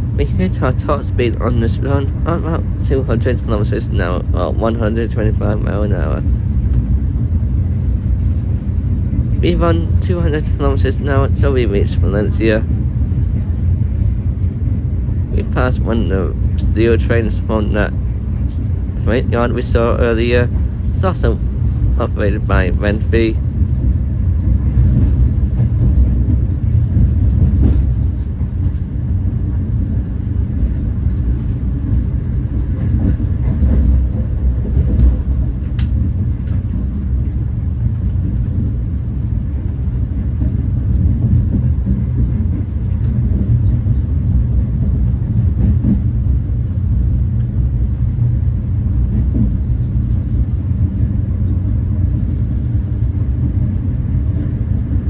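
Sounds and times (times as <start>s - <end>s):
train wheels rumbling on rail: 0.0s - 55.0s.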